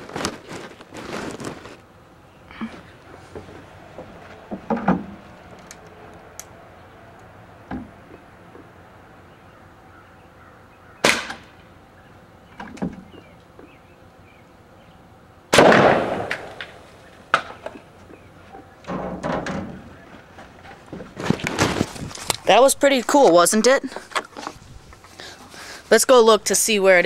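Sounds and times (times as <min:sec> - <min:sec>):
air pistol firing cracks: 0:11.0 - 0:11.5, 0:15.5 - 0:16.8
bottle bursting with a bang: 0:15.6 - 0:16.5.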